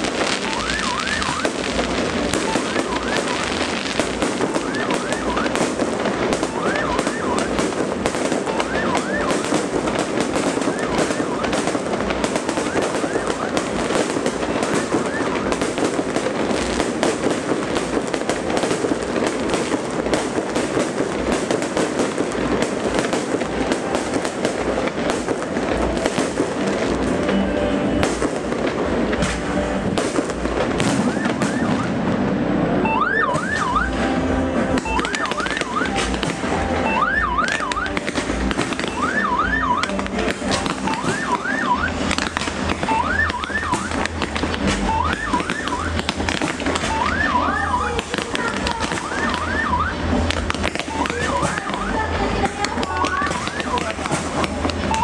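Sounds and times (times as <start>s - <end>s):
siren wailing: 0.0s - 16.6s, 30.9s - 34.1s, 34.8s - 38.0s, 38.8s - 40.0s, 40.7s - 44.1s, 44.8s - 52.0s, 52.8s - 54.2s
fireworks bangs and crackles: 0.0s - 55.0s.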